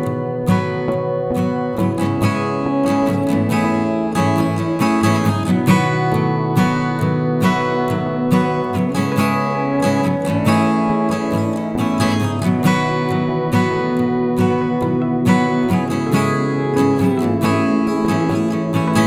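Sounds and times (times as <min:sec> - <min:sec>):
acoustic guitar music: 0:00.0 - 0:19.0.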